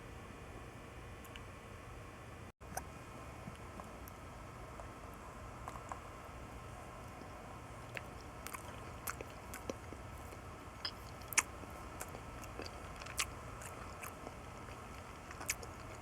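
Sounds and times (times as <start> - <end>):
person chewing food: 5.5 - 6.2, 7.0 - 16.0.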